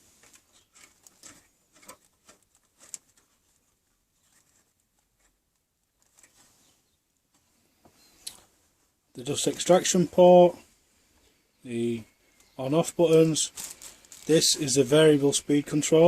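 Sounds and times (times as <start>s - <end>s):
soft handling clicks and rustles: 0.1s - 8.6s, 12.3s - 14.5s.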